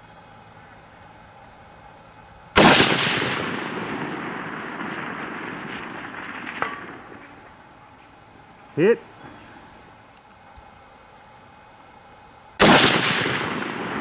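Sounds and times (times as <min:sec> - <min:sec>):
rifle shot with echo: 0:02.6 - 0:08.6, 0:12.6 - 0:14.0.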